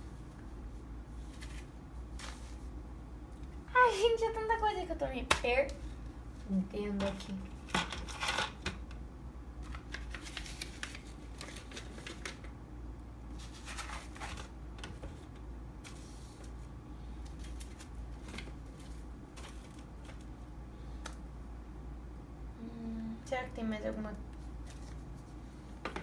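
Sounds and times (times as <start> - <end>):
packages clicking and knocking: 9.6 - 12.5
packages rustling: 9.6 - 12.5, 13.3 - 20.4.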